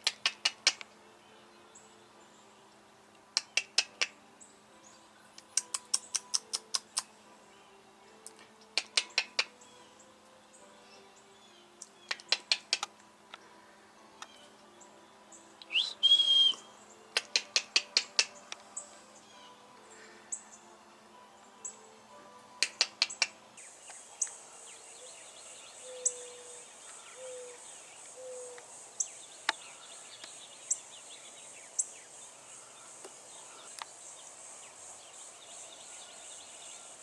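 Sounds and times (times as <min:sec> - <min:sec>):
bird chirping: 0:03.4 - 0:37.0
rising bird whistle: 0:15.6 - 0:16.7.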